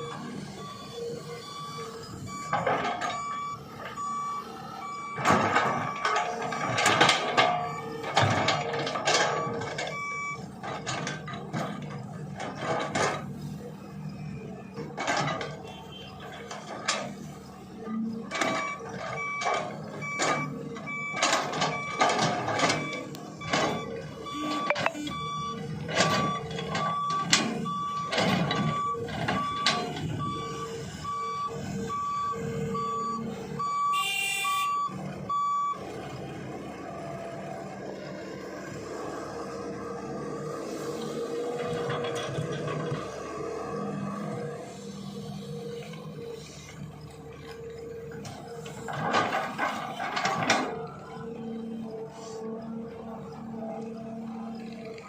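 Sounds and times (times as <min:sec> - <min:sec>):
vehicle backup alarm beeping: 0:00.0 - 0:13.1, 0:14.0 - 0:36.0
heavy machinery running: 0:00.0 - 0:33.8, 0:35.0 - 0:55.0
knocks and clatter: 0:48.2 - 0:50.8.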